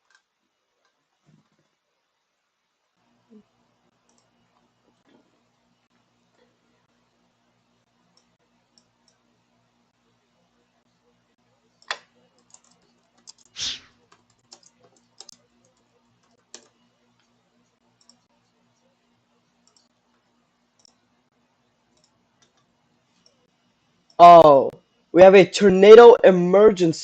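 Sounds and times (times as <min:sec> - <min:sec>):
keyboard and mouse clicks: 0:00.0 - 0:01.8, 0:04.0 - 0:05.3, 0:11.8 - 0:17.4, 0:18.0 - 0:18.3, 0:19.6 - 0:19.9, 0:20.8 - 0:21.0, 0:21.9 - 0:23.4.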